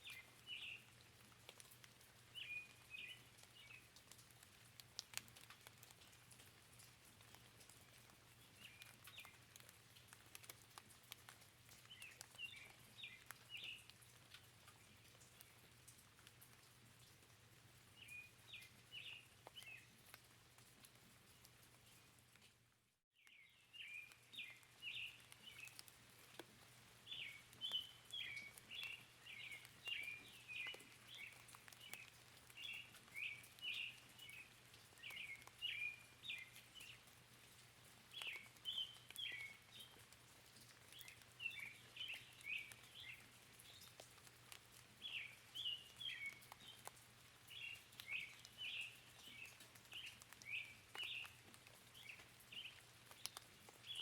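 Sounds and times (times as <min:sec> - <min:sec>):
raindrop ticks: 0:00.0 - 0:54.0
bird singing: 0:27.1 - 0:34.4.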